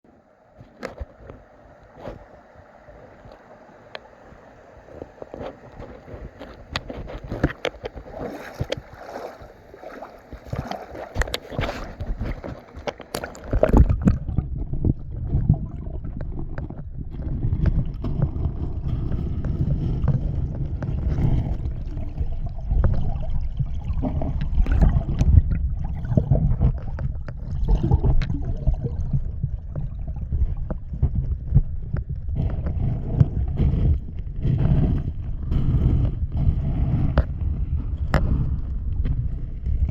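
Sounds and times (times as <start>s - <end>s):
stream water gurgling: 0.0s - 31.1s
wind rumble on microphone: 0.6s - 39.9s
knocks and rustles: 10.3s - 14.8s.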